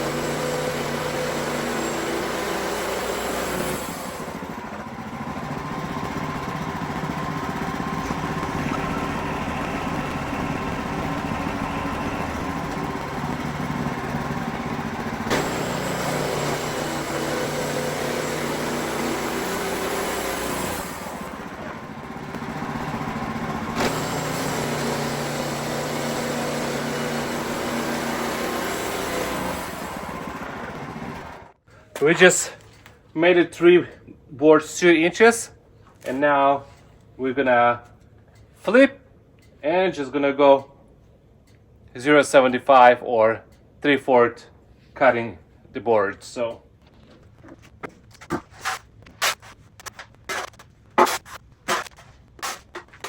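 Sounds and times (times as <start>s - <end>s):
band blade sawing log: 0.0s - 4.7s, 5.4s - 31.3s, 48.2s - 53.0s
sawmill engine running: 0.0s - 31.6s.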